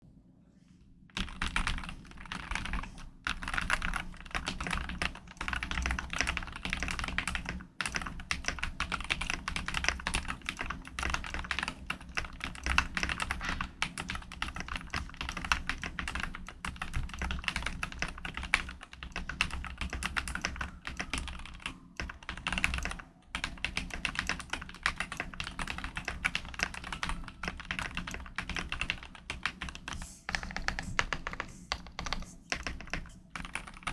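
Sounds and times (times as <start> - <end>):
mechanical keyboard typing: 1.2 - 33.9.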